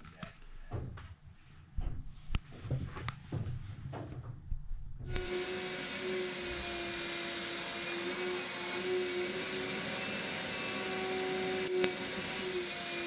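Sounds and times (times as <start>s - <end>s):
machine whirring: 5.1s - 13.0s.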